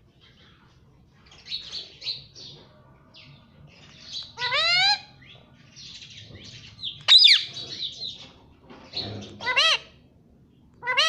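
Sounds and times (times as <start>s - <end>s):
parrot chirping and chattering: 3.7s - 10.0s, 10.8s - 11.0s.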